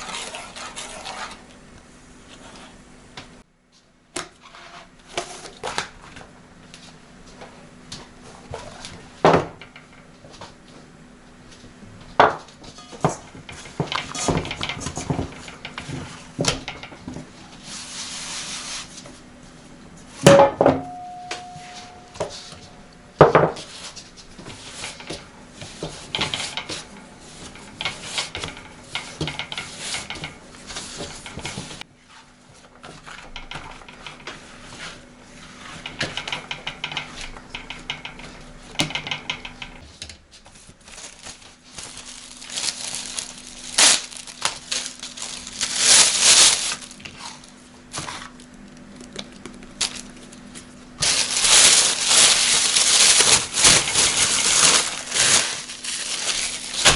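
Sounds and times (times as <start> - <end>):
steady ringing tone: 20.4 - 22.9.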